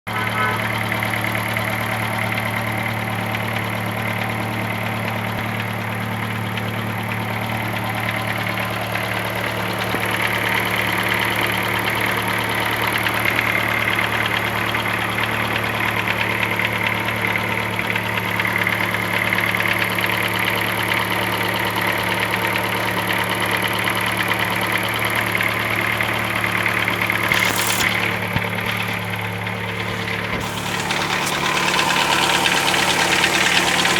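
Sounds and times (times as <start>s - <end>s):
car engine idling: 0.0s - 33.9s
mechanical noise: 27.2s - 33.9s.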